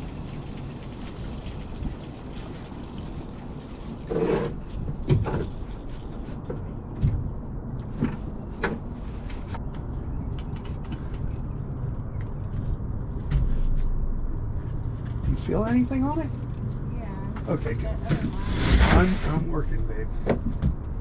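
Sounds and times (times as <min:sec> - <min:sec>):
choppy water against boat: 0:00.0 - 0:06.2
wind rumble: 0:00.0 - 0:21.0.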